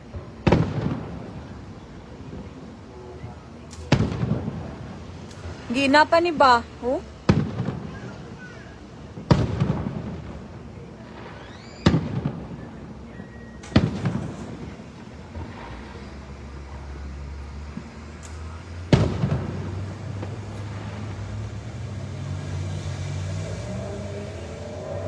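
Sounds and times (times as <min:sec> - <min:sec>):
fireworks booming: 0:00.4 - 0:01.5, 0:09.1 - 0:12.6, 0:13.7 - 0:16.2, 0:18.9 - 0:21.2.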